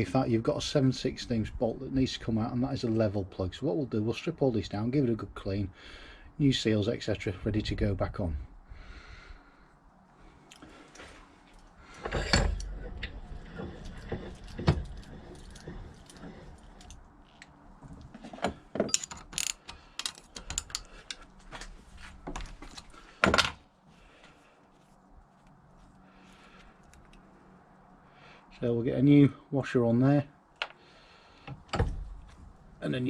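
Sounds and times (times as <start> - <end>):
small metal parts clinking: 18.8 - 21.2.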